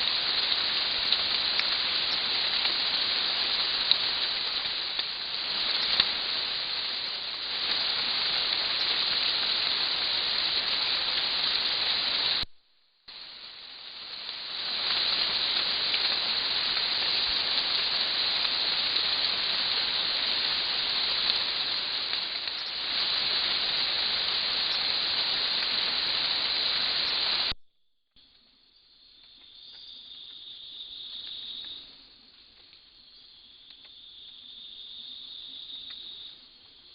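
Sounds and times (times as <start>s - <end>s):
insects calling: 0.0s - 12.4s, 13.1s - 27.5s, 28.2s - 36.9s
heavy rain hiss: 0.0s - 12.5s, 13.1s - 27.5s.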